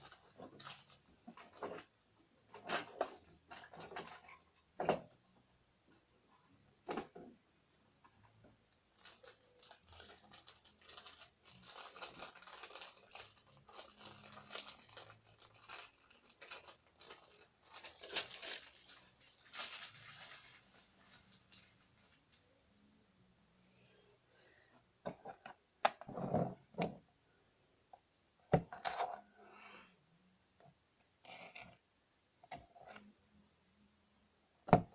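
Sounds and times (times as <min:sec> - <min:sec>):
crinkling and rustling handling: 0:00.0 - 0:05.3, 0:08.0 - 0:22.8.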